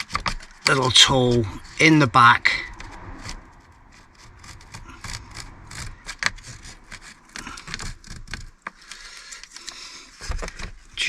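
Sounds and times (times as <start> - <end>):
plastic lever scraping and clicking: 4.5 - 11.0.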